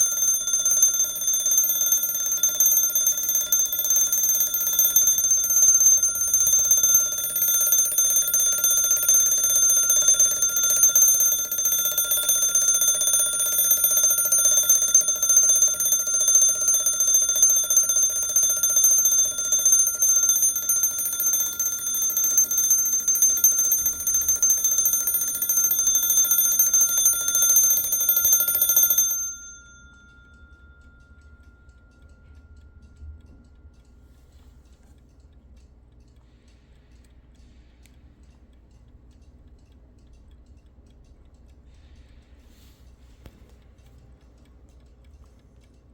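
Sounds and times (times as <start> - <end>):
alarm clock bell ringing: 0.0 - 34.5.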